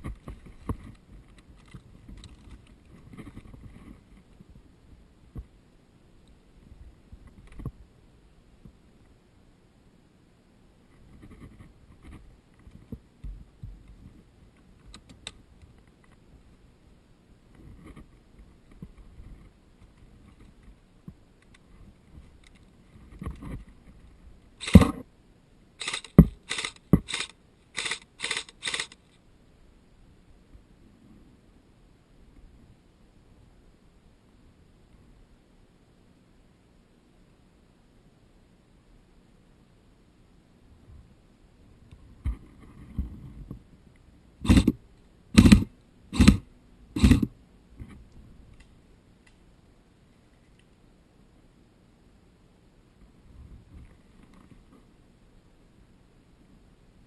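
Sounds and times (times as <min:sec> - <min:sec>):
airsoft gun shots: 0:45.4 - 0:46.4.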